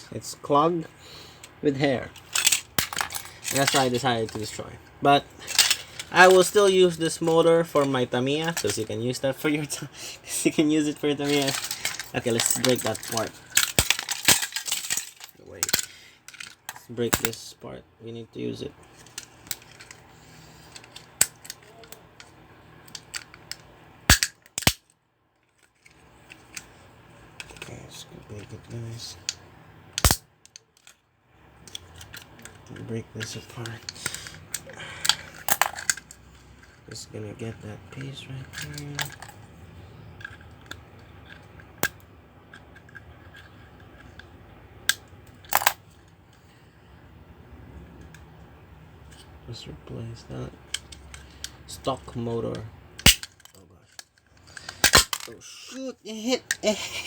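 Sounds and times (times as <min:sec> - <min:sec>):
rattle of plastic snaps: 0:02.2 - 0:04.4, 0:05.4 - 0:08.8, 0:11.2 - 0:17.4, 0:22.9 - 0:24.9, 0:30.0 - 0:31.0, 0:31.6 - 0:36.2, 0:38.0 - 0:39.4, 0:44.9 - 0:45.8, 0:52.5 - 0:55.4
loud plastic snaps: 0:24.1 - 0:24.8, 0:53.0 - 0:53.4, 0:54.6 - 0:55.3
hard plastic cracking: 0:53.0 - 0:53.5, 0:54.5 - 0:55.4.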